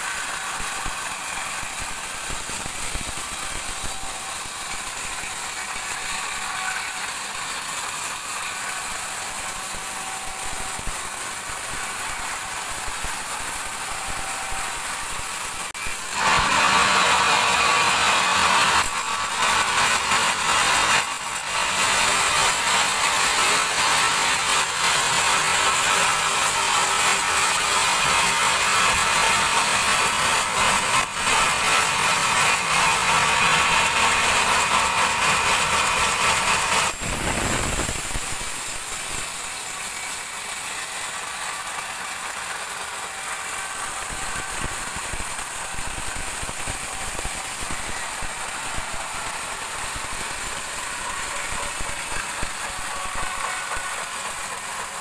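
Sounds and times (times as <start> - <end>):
band saw cutting log: 0.0 - 55.0
machinery running: 0.0 - 55.0.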